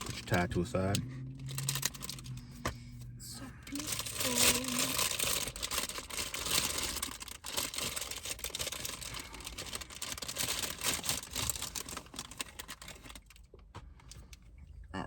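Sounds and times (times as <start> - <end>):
wrapping rustling and crackling: 0.0 - 2.6, 3.7 - 14.4.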